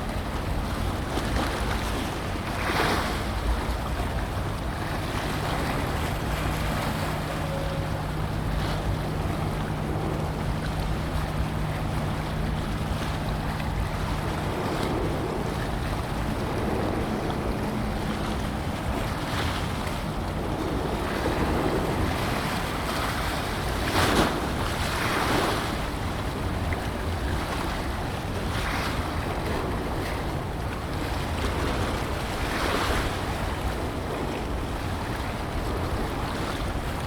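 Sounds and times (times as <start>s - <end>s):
ship engine drone: 0.0s - 37.0s
water swishes: 0.0s - 37.0s
wind buffeting microphone: 0.0s - 37.0s
water washing: 3.2s - 24.8s.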